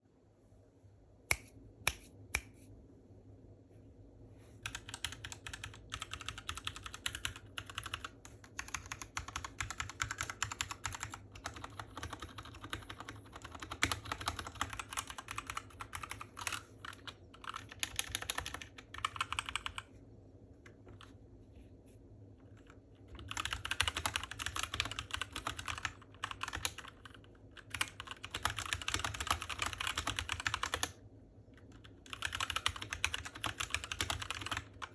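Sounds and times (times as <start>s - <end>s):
mechanical keyboard typing: 4.6s - 19.9s, 22.5s - 31.0s, 31.6s - 34.9s.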